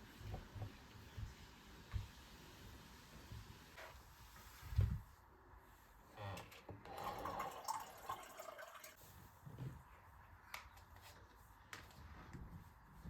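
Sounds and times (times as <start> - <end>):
liquid pouring into container: 6.9 - 9.0.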